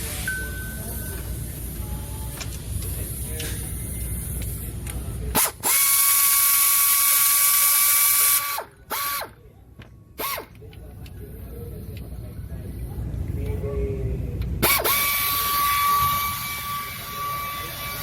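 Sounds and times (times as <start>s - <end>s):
power tool motor whine: 14.6s - 18.0s.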